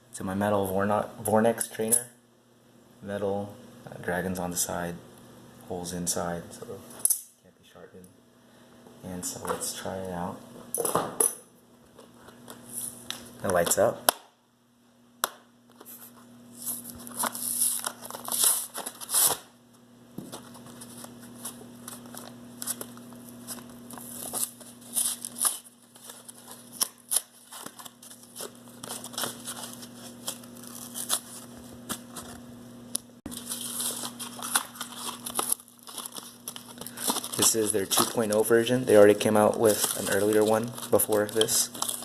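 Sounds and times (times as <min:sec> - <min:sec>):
rustling handling noise: 0:33.3 - 0:42.0.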